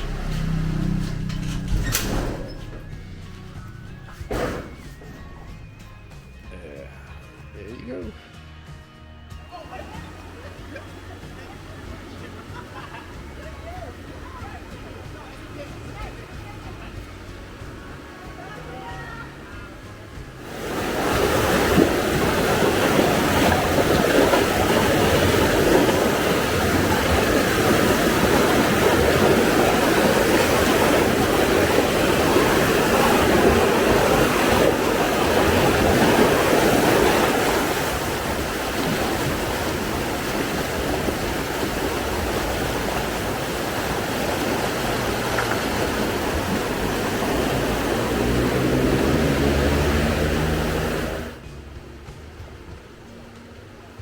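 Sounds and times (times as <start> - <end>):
vehicle engine revving: 0.0 - 5.5, 19.9 - 51.4.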